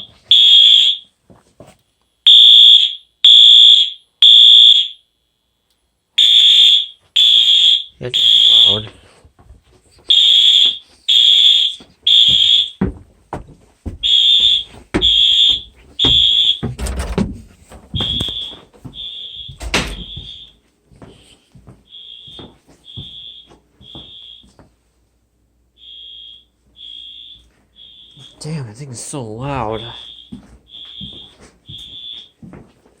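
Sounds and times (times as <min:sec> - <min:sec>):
electronic horn beeping: 0:14.1 - 0:16.7.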